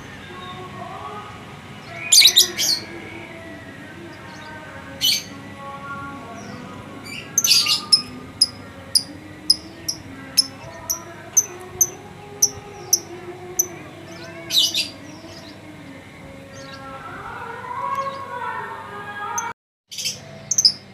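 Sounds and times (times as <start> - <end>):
lovebird high chirps: 7.4 - 13.7.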